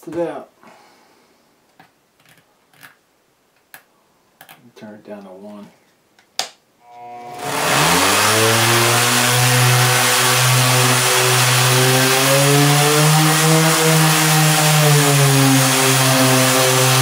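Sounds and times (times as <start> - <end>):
orbital sander humming: 6.8 - 17.0.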